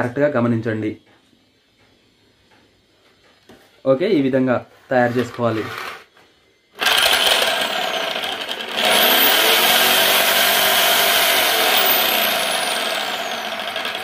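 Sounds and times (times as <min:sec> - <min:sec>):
electric drill spinning blender blades: 0:06.8 - 0:14.0.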